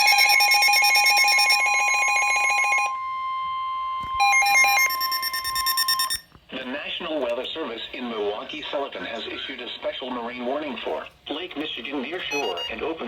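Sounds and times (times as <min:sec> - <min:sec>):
rapid pulsing alarm beeps: 0:00.0 - 0:03.0, 0:04.2 - 0:06.2, 0:12.3 - 0:12.9
steady alarm tone: 0:00.0 - 0:06.3.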